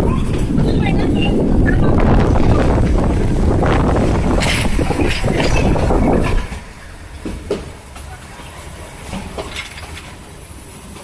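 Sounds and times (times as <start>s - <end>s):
train carriage rumbling on track: 0.0s - 11.0s.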